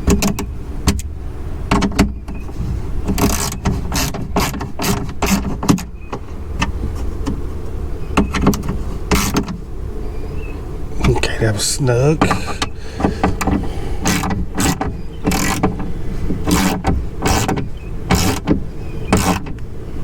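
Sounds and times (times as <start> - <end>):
hand tool clicking on bolts: 12.3 - 15.7.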